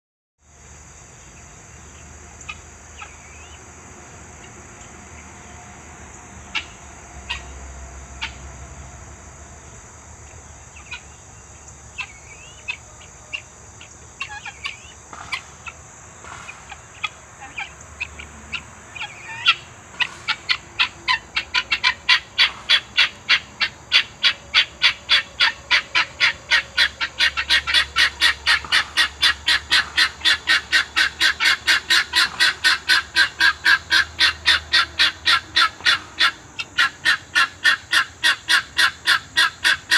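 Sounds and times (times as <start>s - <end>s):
fowl calling: 6.4s - 8.5s, 11.9s - 39.9s.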